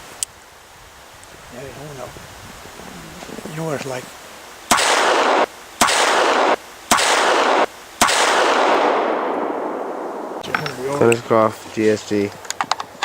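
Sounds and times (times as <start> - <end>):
gunshots with echo: 4.7 - 10.4.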